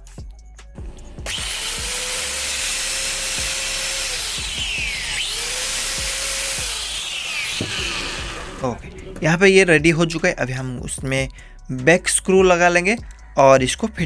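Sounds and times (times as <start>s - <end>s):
angle grinder motor whining: 0.8s - 10.0s.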